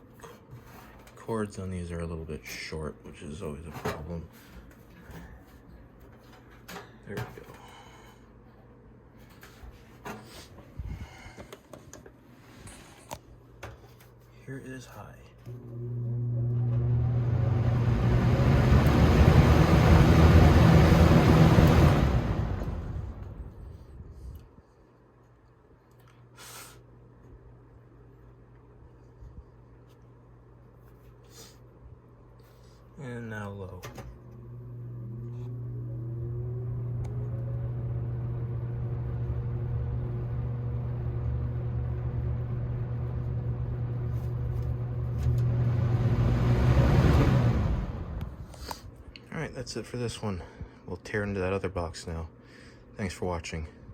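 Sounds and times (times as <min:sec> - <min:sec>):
fan motor hum: 0:00.0 - 0:24.6, 0:26.9 - 0:51.9
box fan air rushing: 0:16.9 - 0:24.1, 0:43.5 - 0:49.0.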